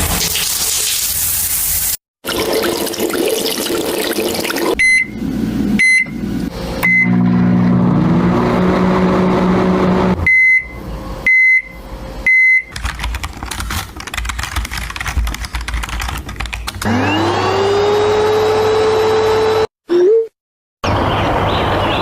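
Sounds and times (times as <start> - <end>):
appliance humming: 2.4 - 14.2, 16.7 - 19.7
appliance beeping: 4.8 - 8.7, 9.7 - 12.8.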